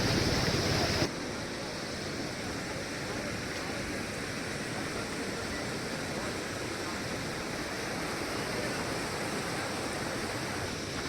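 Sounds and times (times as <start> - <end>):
stream water rushing: 0.0 - 11.0.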